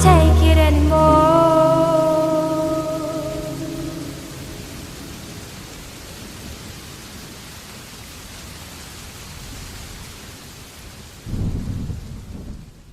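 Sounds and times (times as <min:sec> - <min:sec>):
rain on a car: 0:02.0 - 0:12.9
thunder rumble: 0:11.3 - 0:12.9.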